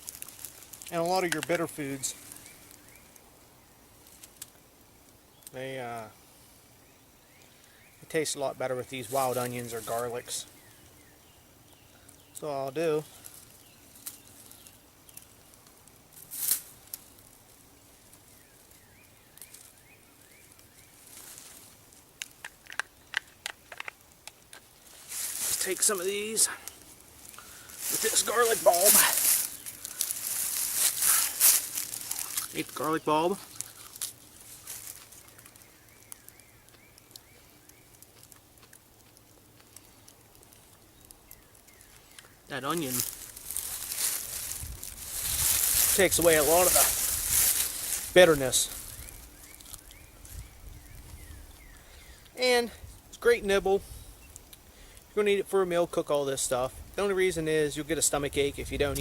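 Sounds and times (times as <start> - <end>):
stems snapping: 0.0 - 3.3, 4.0 - 5.6, 13.2 - 21.5, 22.1 - 50.4
plants rustling: 0.0 - 6.6, 7.3 - 11.1, 12.0 - 59.0
person chewing crunchy greens: 29.0 - 32.7, 33.4 - 35.5, 38.0 - 40.8.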